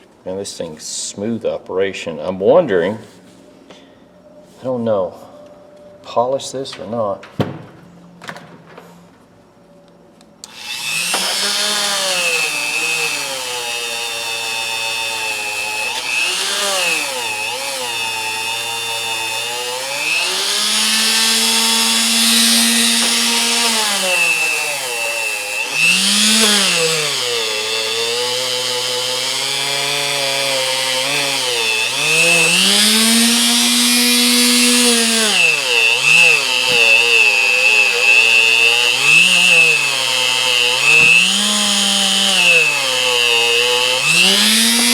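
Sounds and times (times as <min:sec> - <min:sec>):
wire wheel power tool running: 0:10.4 - 0:44.9.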